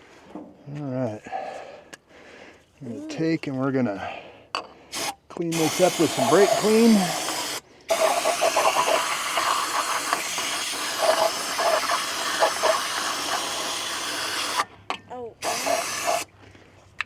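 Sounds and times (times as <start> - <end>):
aerosol spray hissing: 5.0 - 14.6, 15.4 - 16.3.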